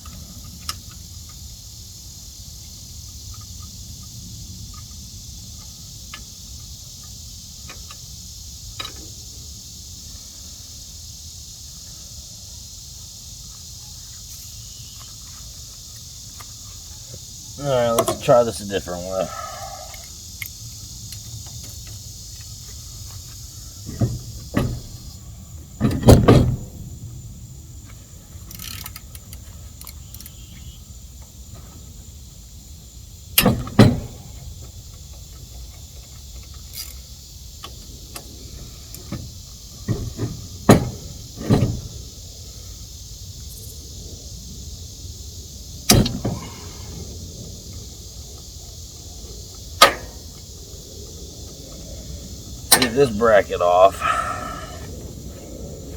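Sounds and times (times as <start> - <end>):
crickets chirping: 0.0 - 55.9
hand tools clanking on metal: 52.7 - 54.2.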